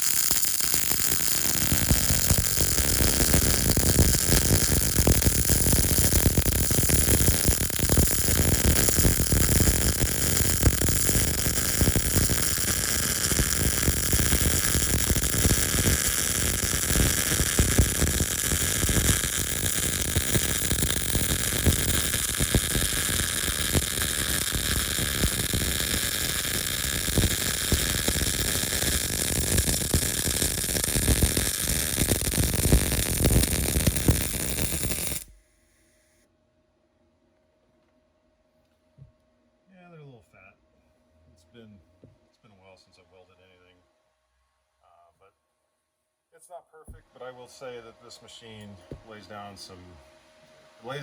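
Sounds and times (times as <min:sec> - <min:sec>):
welding arc crackling: 0:00.0 - 0:35.4.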